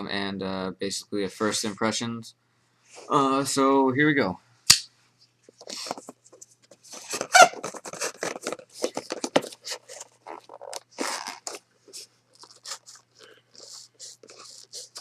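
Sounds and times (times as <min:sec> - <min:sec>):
cardboard tearing and crunching: 0:06.9 - 0:11.6, 0:12.4 - 0:15.0.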